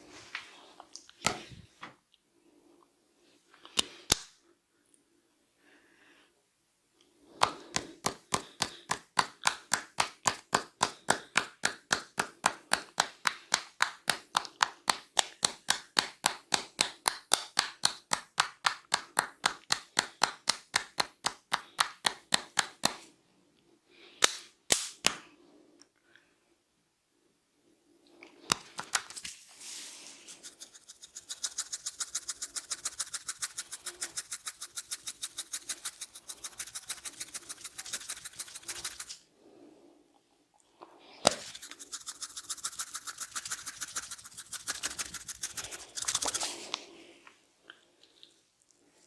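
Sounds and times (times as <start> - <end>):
sharp hand cracks: 24.2 - 25.2.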